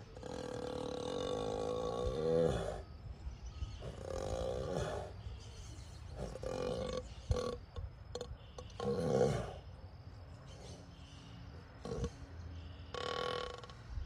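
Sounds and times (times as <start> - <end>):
ox snoring: 0.0 - 2.9, 3.8 - 5.2, 6.2 - 9.6, 11.8 - 12.2, 12.9 - 13.8.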